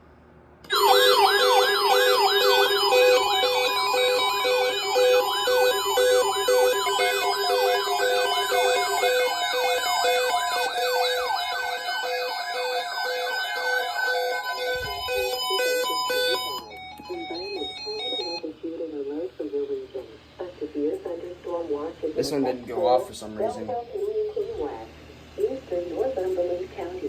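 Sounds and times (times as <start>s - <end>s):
pulsing beep: 0.7s - 18.4s
siren-like falling alarm tone: 0.7s - 18.5s
steady alarm tone: 0.7s - 19.7s.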